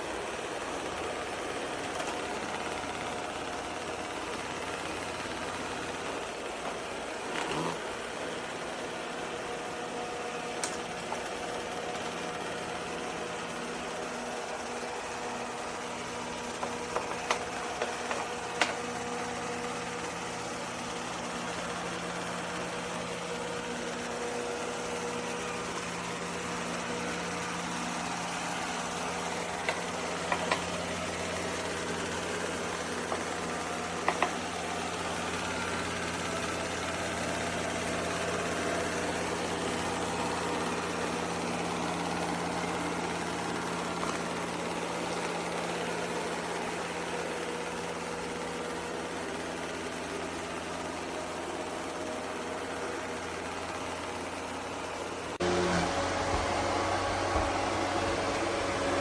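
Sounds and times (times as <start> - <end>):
robot vacuum motor hum: 1.0 - 8.4, 25.1 - 37.0, 55.1 - 59.0.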